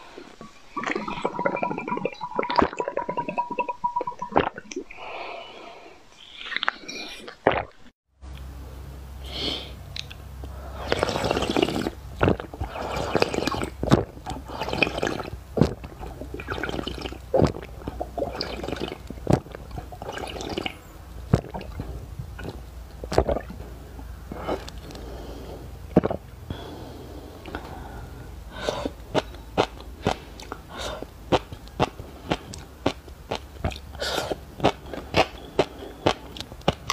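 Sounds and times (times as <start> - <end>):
wet mouth eating sounds: 6.2 - 7.9, 9.9 - 23.6, 24.3 - 26.3, 27.4 - 36.9.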